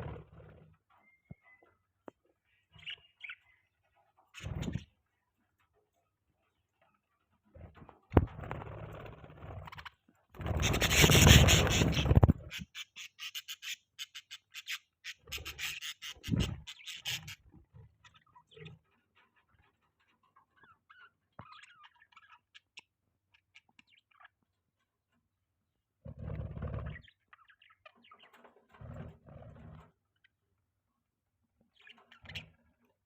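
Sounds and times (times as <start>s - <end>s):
budgies chirping: 1.0s - 5.2s, 8.4s - 24.4s, 26.4s - 28.5s, 31.7s - 32.6s
loud rustling rubbing noise: 10.4s - 12.4s.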